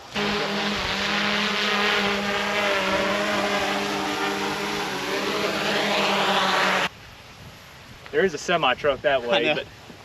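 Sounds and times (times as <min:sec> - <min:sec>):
large engine droning: 0:00.0 - 0:06.9.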